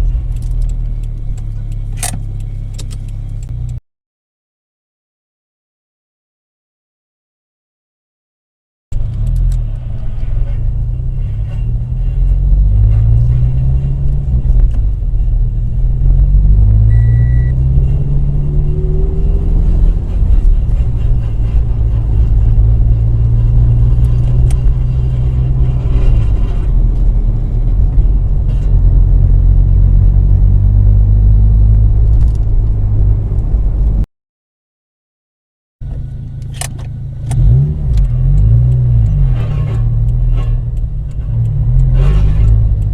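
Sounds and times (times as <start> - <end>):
turbocharged engine revving: 9.0 - 34.0, 36.5 - 42.9.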